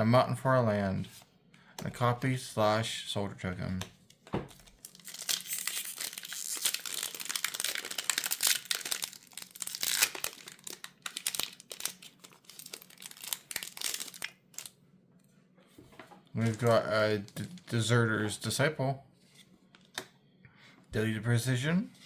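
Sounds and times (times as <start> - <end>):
foil wrapper tearing and crinkling: 4.6 - 14.7.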